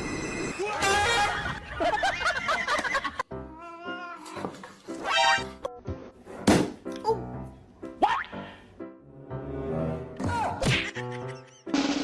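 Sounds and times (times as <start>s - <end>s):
cat meowing: 3.5s - 4.4s.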